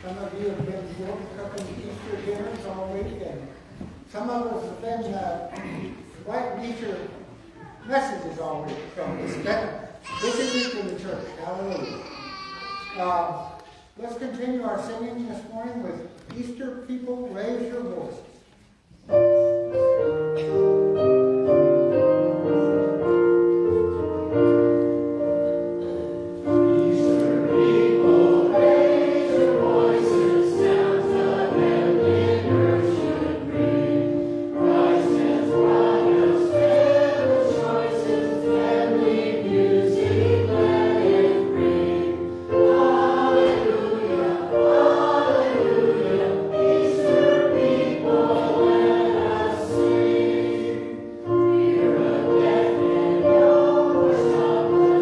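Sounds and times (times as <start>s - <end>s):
piano playing: 19.1s - 55.0s
congregation singing a hymn: 19.2s - 55.0s.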